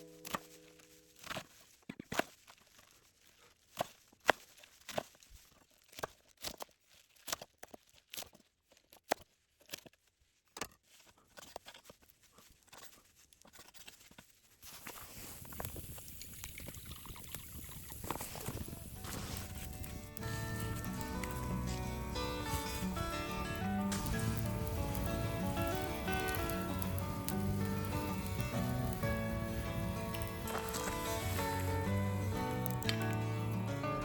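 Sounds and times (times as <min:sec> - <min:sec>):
steady hiss: 0:14.8 - 0:34.0
utensils clicking on a pot: 0:16.1 - 0:33.6.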